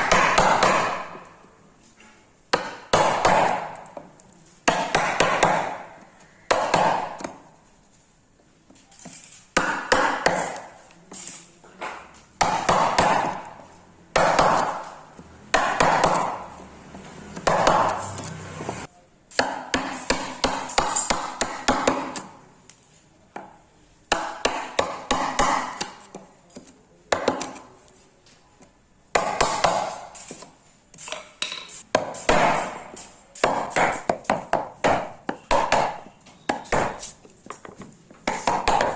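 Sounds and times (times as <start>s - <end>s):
hand tools knocking on wood: 2.5s - 7.4s, 11.8s - 22.3s, 24.1s - 27.6s, 31.1s - 38.9s.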